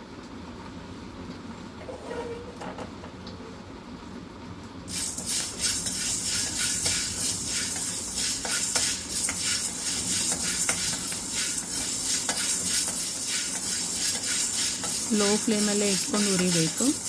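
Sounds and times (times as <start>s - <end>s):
peppercorns rattling in a pan: 4.9s - 17.0s.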